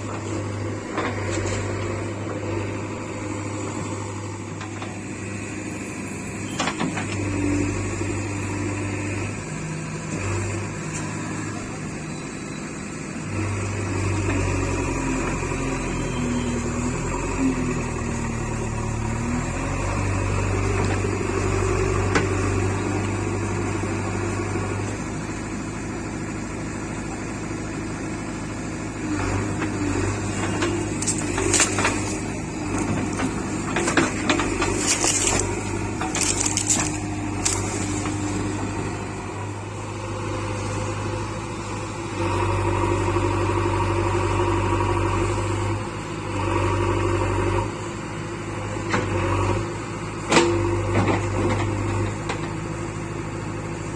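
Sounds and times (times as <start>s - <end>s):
backhoe diesel engine running: 0.0s - 53.9s
sharp knocks and crunching: 29.6s - 39.0s.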